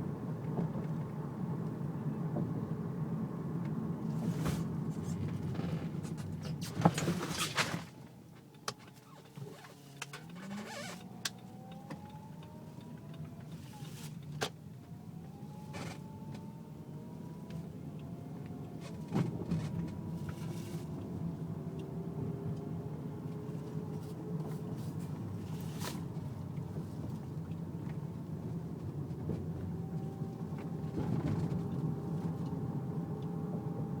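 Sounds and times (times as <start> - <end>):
engine hum: 0.0 - 34.0
power steering whining: 8.9 - 18.9.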